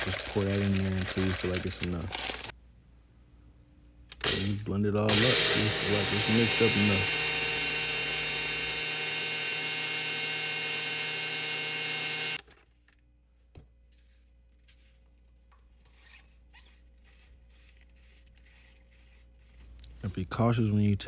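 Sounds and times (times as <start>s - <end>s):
blender motor running: 5.1s - 12.4s.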